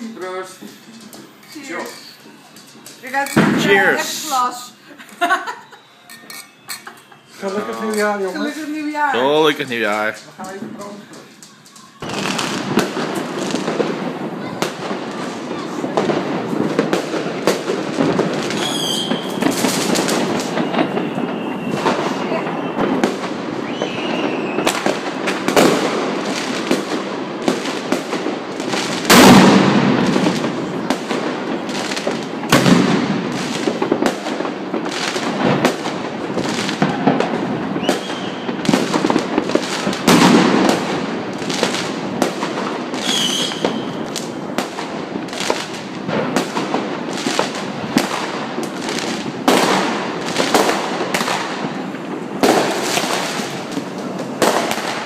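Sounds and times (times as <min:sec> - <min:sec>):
firecracker bangs: 0:00.0 - 0:55.0
heavy firework booms: 0:03.4 - 0:04.4, 0:12.0 - 0:55.0
rocket whistle: 0:05.5 - 0:08.0, 0:18.5 - 0:24.9, 0:37.8 - 0:38.6, 0:43.0 - 0:44.1.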